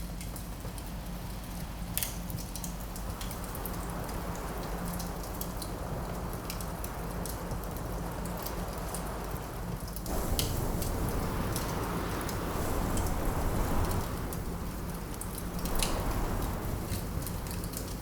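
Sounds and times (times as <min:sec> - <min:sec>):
wood fire crackling and popping: 0:09.9 - 0:18.0
wind rushing: 0:10.1 - 0:18.0.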